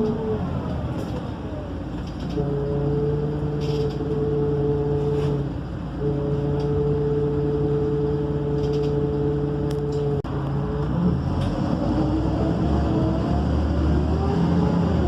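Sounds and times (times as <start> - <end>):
bus diesel engine droning: 0.0 - 15.0.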